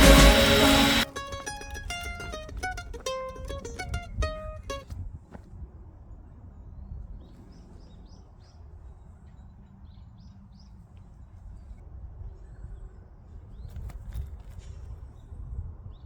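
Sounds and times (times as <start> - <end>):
low outdoor rumble: 0.0 - 4.8.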